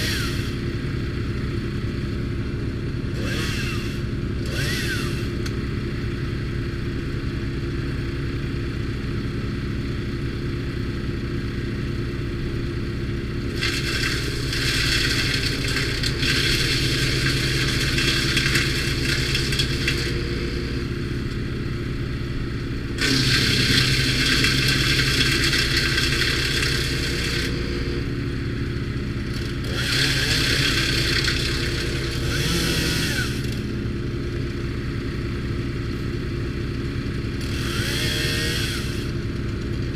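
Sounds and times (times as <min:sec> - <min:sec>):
wood chipper engine running: 0:00.0 - 0:39.9
wood being chipped crackling: 0:13.5 - 0:20.5, 0:23.0 - 0:27.6, 0:29.3 - 0:33.1.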